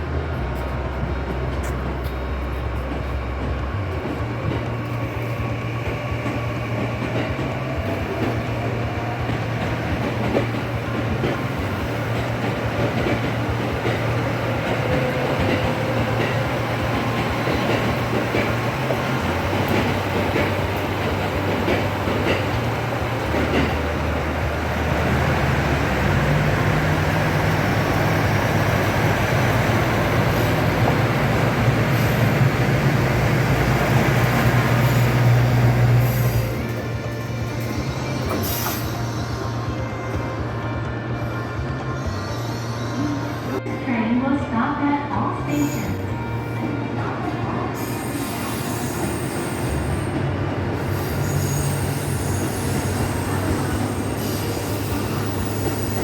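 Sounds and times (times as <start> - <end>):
wheels rumbling on rail: 0.0 - 43.6, 45.4 - 56.0.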